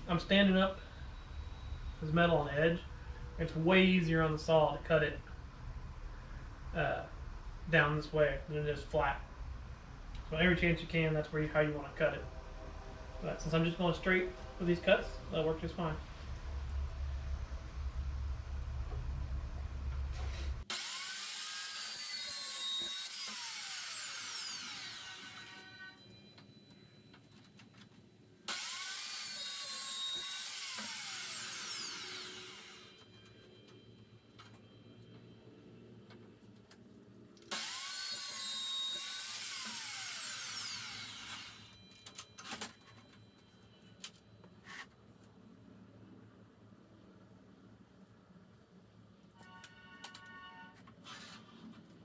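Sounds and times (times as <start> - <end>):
power saw cutting steel: 20.2 - 26.1, 28.5 - 33.4, 37.5 - 41.8.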